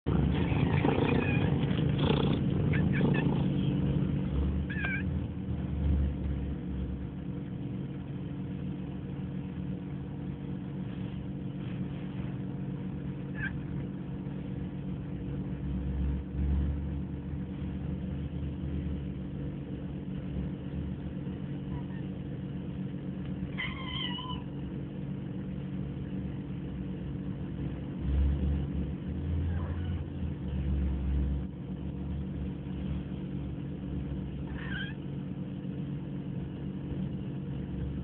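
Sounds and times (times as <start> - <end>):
low hum: 0.0 - 38.0
cat screaming: 0.4 - 1.6, 2.7 - 3.6, 4.6 - 5.1, 13.3 - 13.6, 23.5 - 24.6, 34.5 - 35.0
cat chirps: 4.7 - 5.1, 23.5 - 24.6, 34.5 - 35.0.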